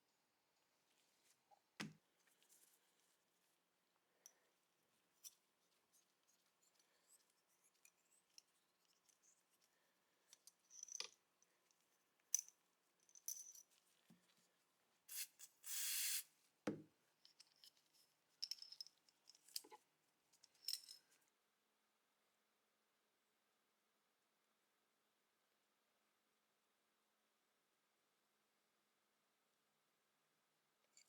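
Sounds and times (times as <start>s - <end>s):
short hiss: 15.1s - 16.3s.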